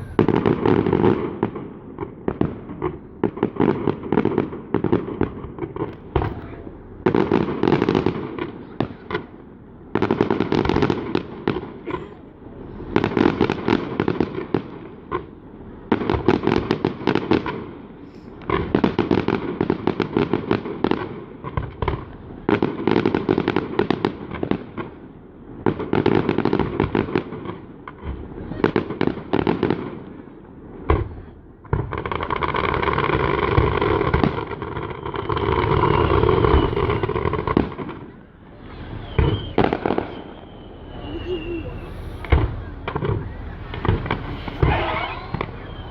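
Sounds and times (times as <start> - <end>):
fireworks crackling bangs: 0.0 - 45.9.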